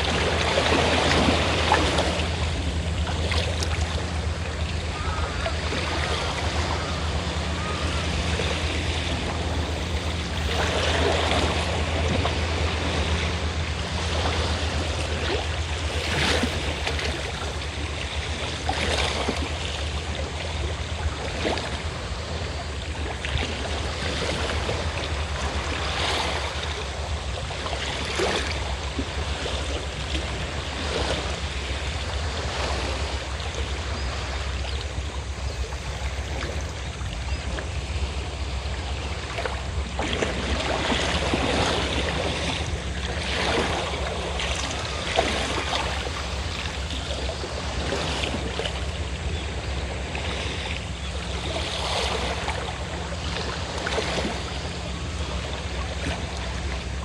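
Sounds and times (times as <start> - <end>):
boat engine drone: 0.0 - 57.0
waves washing onto shore: 0.0 - 57.0.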